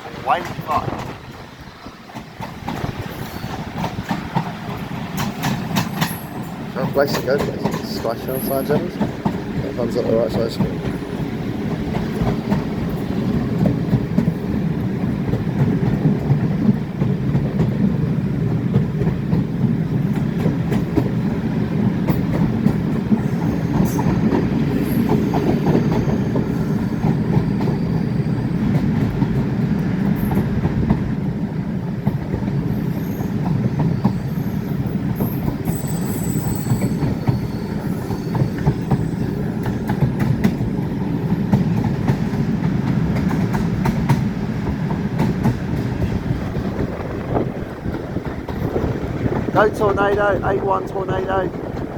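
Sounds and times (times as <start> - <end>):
train wheels rumbling on rail: 0.0 - 51.9
high wheel squeals: 23.2 - 28.8, 32.6 - 39.9.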